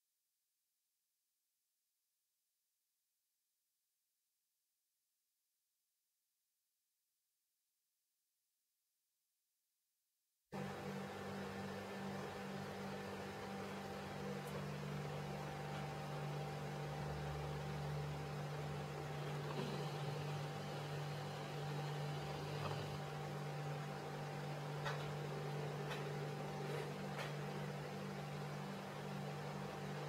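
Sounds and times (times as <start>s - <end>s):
low hum with hiss: 10.6s - 30.0s.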